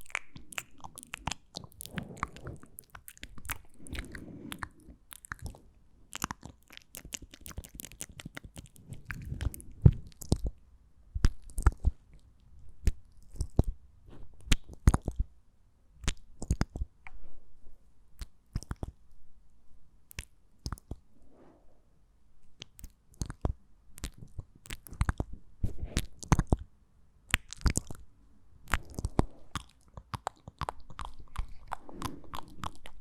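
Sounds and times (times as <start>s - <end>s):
mouth pops: 0.0s - 10.5s, 28.7s - 33.0s
wet lip and tongue clicks: 0.0s - 10.6s, 11.2s - 13.8s, 14.4s - 15.3s, 16.0s - 16.9s, 18.2s - 19.0s, 20.1s - 21.0s, 22.5s - 26.7s, 27.3s - 28.0s, 28.6s - 33.0s.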